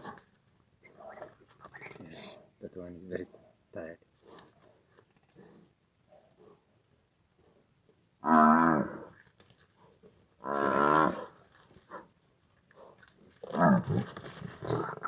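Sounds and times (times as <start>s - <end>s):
large animal bellowing: 10.4s - 11.3s.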